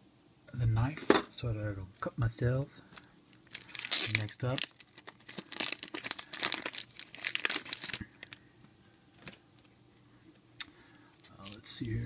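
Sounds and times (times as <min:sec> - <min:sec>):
packaging crinkling and tearing: 0:03.3 - 0:08.4.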